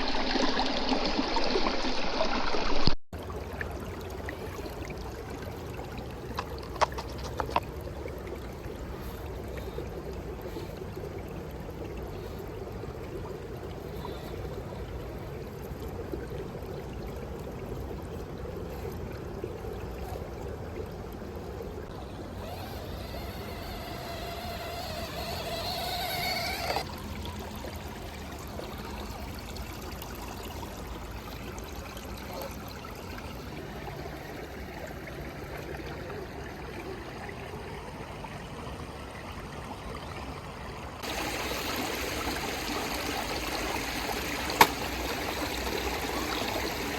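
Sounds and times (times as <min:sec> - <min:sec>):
creek water running: 0:00.0 - 0:46.9
small electric motor whining: 0:21.9 - 0:26.9.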